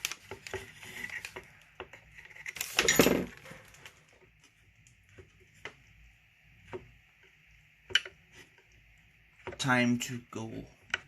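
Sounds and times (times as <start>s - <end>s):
small parts clicking and tapping: 6.7s - 8.7s.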